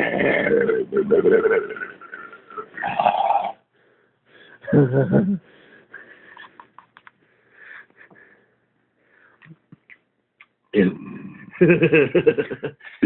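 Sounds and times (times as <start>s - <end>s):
person burping: 0.0s - 3.6s
faint clicks: 6.5s - 7.2s.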